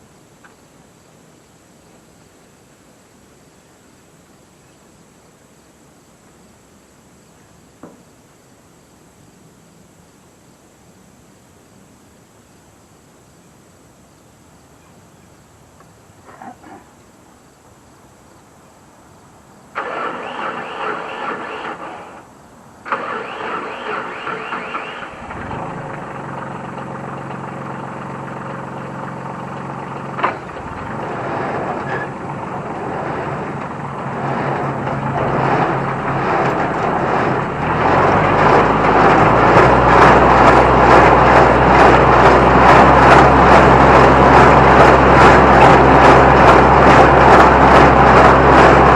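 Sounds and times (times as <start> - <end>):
tractor diesel engine running: 19.8 - 48.9
tractor starter cranking: 19.8 - 48.9.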